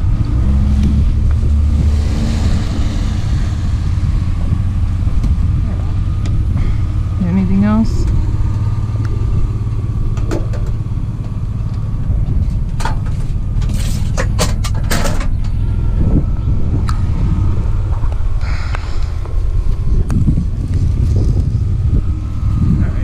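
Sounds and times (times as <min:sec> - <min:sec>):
van engine rumbling: 0:00.0 - 0:23.0
sharp clicks and rattles: 0:07.3 - 0:15.6.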